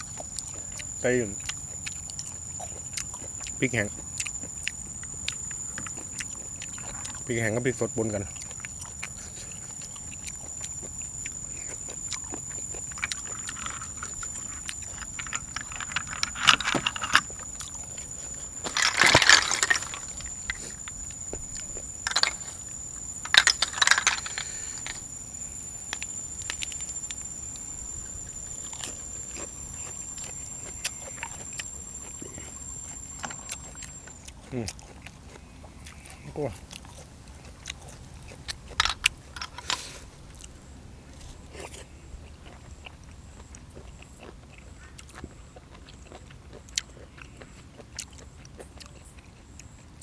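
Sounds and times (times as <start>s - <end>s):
chewing and mouth noises: 0.0s - 50.0s
faint high-pitched whine: 0.0s - 50.0s
crunching or sucking bursts: 17.2s - 23.2s.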